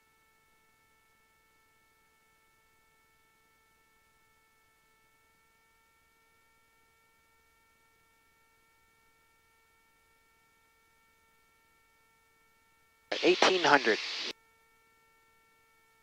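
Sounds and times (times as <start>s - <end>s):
faint electrical hum: 13.1s - 14.3s
low hiss: 13.1s - 14.3s.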